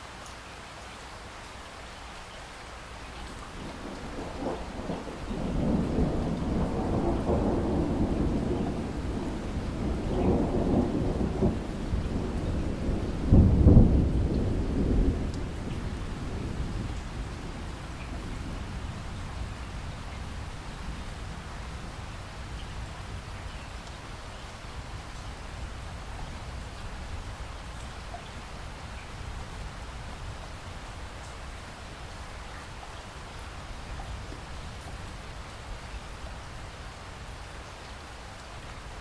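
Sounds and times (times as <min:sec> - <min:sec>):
steady rain: 0:00.0 - 0:39.0
thunder rolling: 0:03.5 - 0:22.0.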